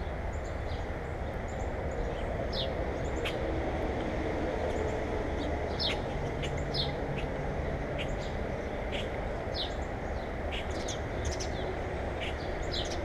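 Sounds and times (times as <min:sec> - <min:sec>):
small birds chirping: 0:08.0 - 0:13.0.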